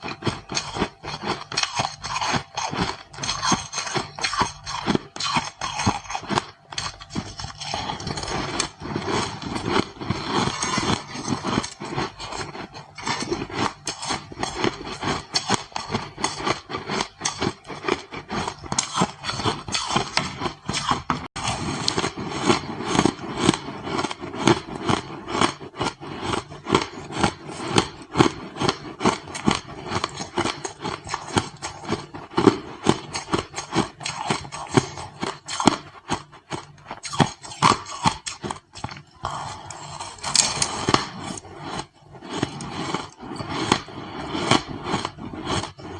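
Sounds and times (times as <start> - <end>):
ice crunching and cracking: 0.0 - 36.3.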